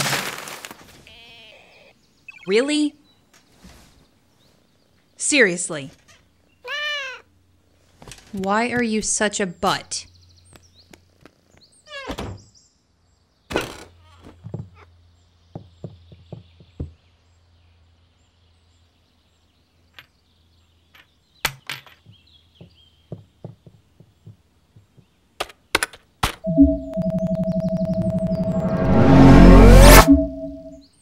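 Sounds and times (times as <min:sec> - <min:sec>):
low hum: 0:26.5 - 0:30.8.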